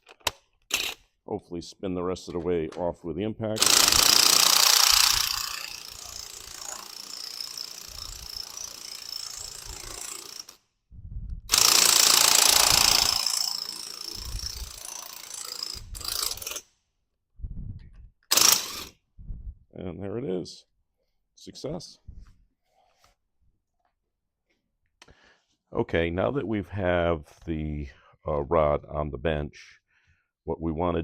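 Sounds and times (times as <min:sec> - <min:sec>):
impact wrench hammering: 0:03.6 - 0:10.6, 0:11.5 - 0:16.6, 0:18.3 - 0:18.9.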